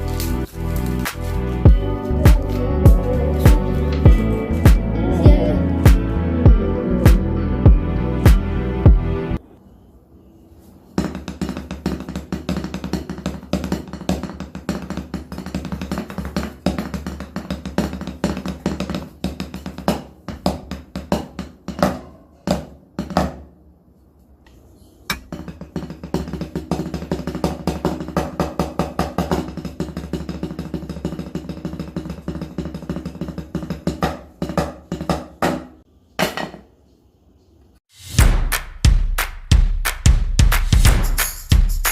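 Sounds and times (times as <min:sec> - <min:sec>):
fast drumming with sticks: 0:00.0 - 0:07.2, 0:11.0 - 0:22.2, 0:25.1 - 0:35.8, 0:38.1 - 0:41.9.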